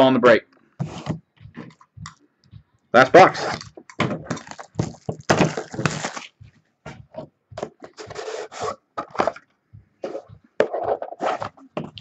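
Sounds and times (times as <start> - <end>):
cardboard and wrapper rustling: 3.3 - 6.4.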